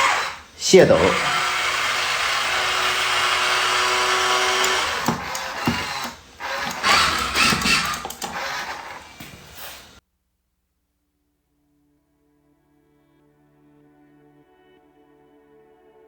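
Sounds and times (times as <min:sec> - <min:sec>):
toy truck motor whirring: 0:00.0 - 0:10.0.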